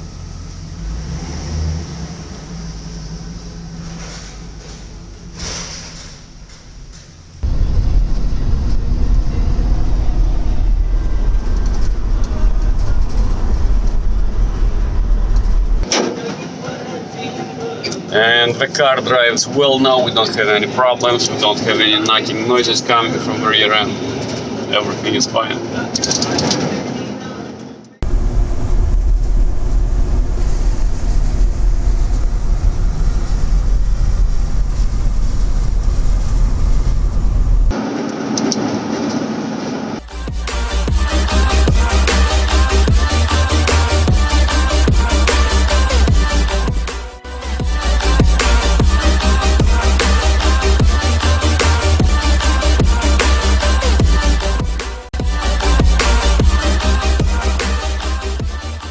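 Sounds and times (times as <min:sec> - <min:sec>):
van driving on road rumble: 0:00.0 - 0:58.9.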